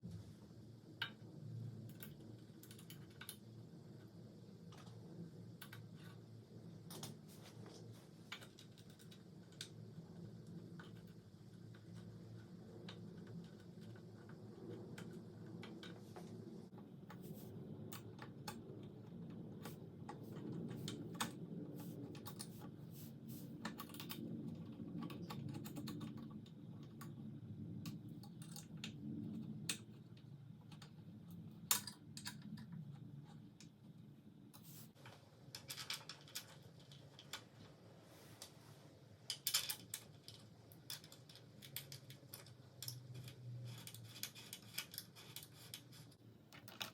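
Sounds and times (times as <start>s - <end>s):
low steady hum: 0.0s - 46.9s
clicks and taps of small parts: 27.8s - 32.9s, 39.3s - 45.9s.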